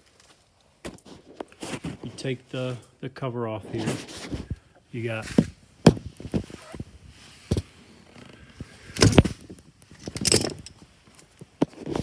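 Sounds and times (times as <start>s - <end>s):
short rattles: 8.6s - 10.9s.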